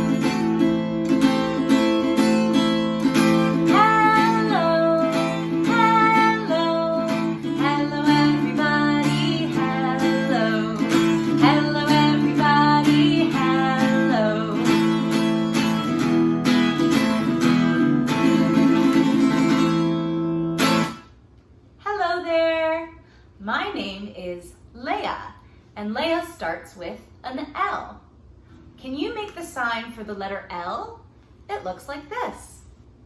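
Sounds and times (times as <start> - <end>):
acoustic guitar strumming: 0.0 - 21.2.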